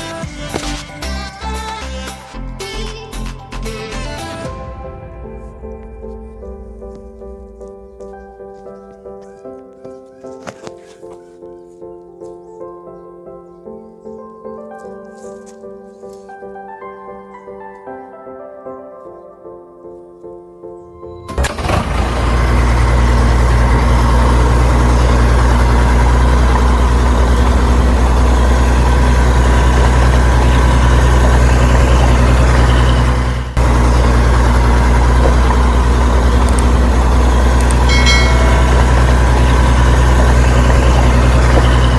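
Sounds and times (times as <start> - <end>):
large engine idling: 21.4 - 41.9.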